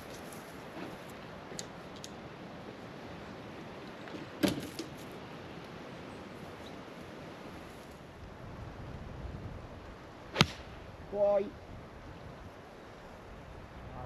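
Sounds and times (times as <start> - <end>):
wind on microphone: 8.1 - 14.0
golf club striking ball: 10.3 - 10.7.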